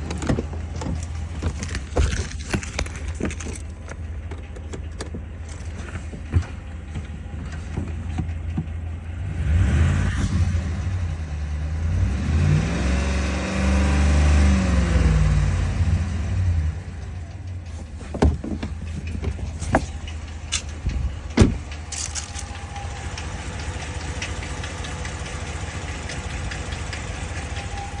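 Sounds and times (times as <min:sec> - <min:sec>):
car engine idling and revving: 0:00.0 - 0:28.0
light engine ticking: 0:19.9 - 0:28.0.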